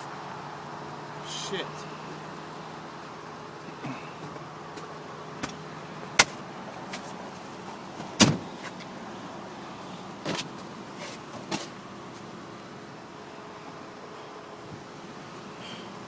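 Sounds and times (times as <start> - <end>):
sharp knocks on car doors: 8.1 - 8.5.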